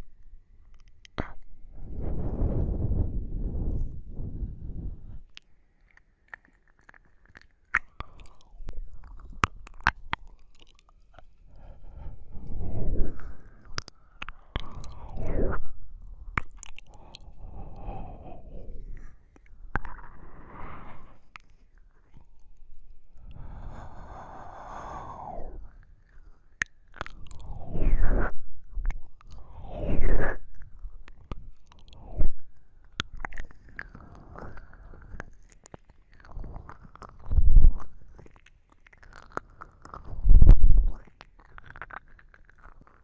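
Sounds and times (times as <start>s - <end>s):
wet tongue and lip sounds: 0.0s - 43.0s
soft breathy rush: 1.2s - 5.3s, 11.3s - 21.4s, 23.0s - 26.4s, 27.2s - 30.7s.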